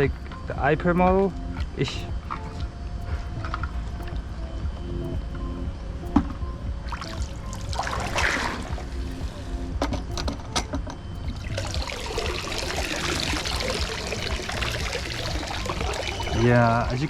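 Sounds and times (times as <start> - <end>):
water splashing and pouring: 6.9 - 8.8, 11.4 - 17.0.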